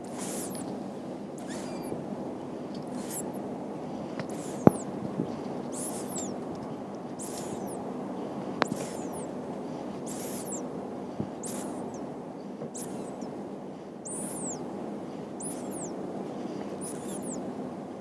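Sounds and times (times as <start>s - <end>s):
rabbit snoring: 0.0s - 0.7s, 1.4s - 2.0s, 2.9s - 3.4s, 4.2s - 4.9s, 5.7s - 6.4s, 7.2s - 7.8s, 8.6s - 9.4s, 10.0s - 10.6s, 11.2s - 12.1s, 12.7s - 13.3s, 14.1s - 14.6s, 15.4s - 15.9s, 16.7s - 17.4s
sharp clicks: 1.4s - 2.0s, 4.2s - 4.9s, 5.8s - 7.8s, 8.6s - 9.3s, 10.1s - 10.6s, 11.4s - 12.1s, 12.7s - 13.3s, 15.4s - 15.9s, 16.8s - 17.4s.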